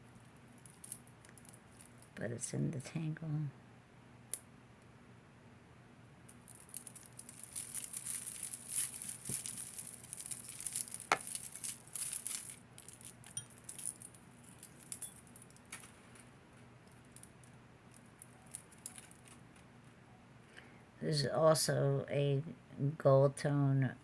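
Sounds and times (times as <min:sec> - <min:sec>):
metal chains jingling: 0:06.5 - 0:15.8.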